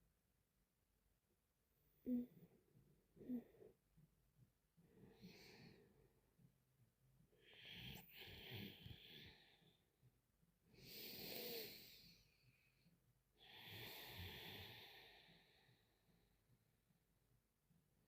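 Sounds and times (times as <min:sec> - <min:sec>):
woman breathing heavily with snore: 0:04.8 - 0:06.0, 0:07.4 - 0:09.8, 0:13.4 - 0:15.9.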